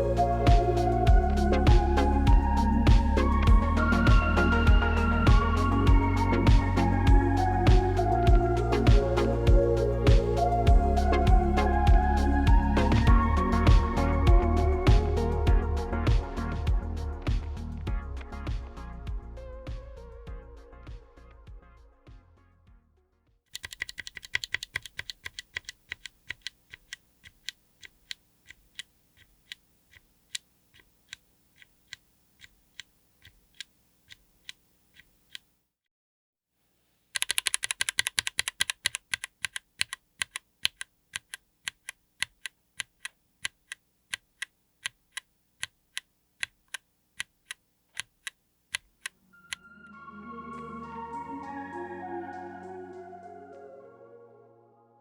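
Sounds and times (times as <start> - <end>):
background music: 0.0 - 22.6, 49.2 - 55.0
mechanical keyboard keystrokes: 23.6 - 35.4, 37.2 - 49.1.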